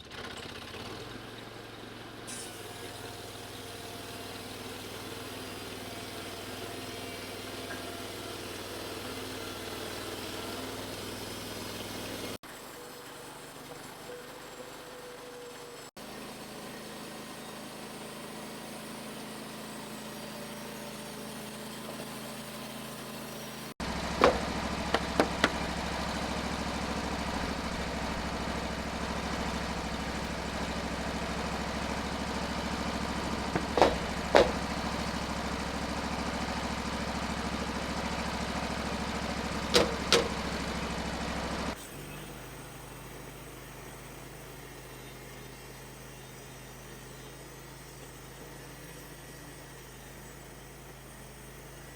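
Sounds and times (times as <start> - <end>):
petrol engine running: 0.0 - 42.6
sharp knocks: 24.2 - 25.7, 33.5 - 34.8, 39.7 - 40.4.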